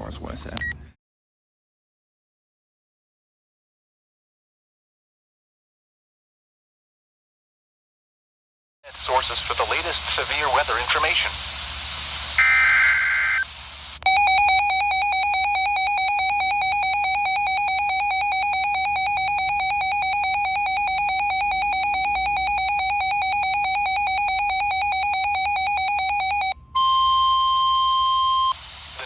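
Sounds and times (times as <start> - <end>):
digital data tones: 12.4 - 26.6
warbling electronic alarm tone: 14.0 - 28.6.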